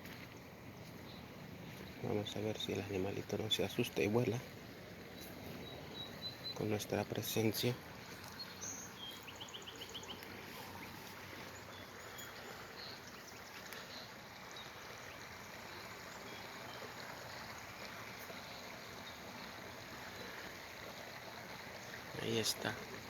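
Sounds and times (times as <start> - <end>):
outdoor background rush: 0.0 - 23.0
bird chirping: 5.2 - 15.5.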